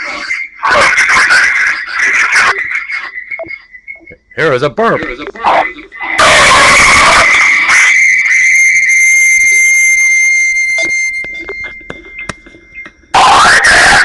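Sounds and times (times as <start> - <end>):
loud rough wavering sound: 5.9 - 14.0
high whistle-like electronic tone: 6.8 - 14.0.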